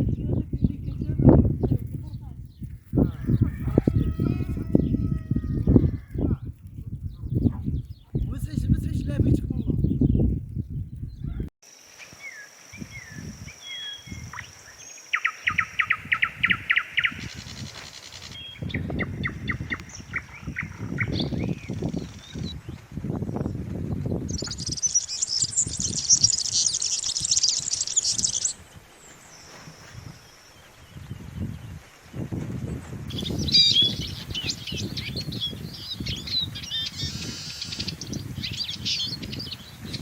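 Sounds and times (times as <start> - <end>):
high bird chirping: 12.3 - 22.8, 24.0 - 31.9, 33.1 - 40.0
bird trills: 24.4 - 30.9.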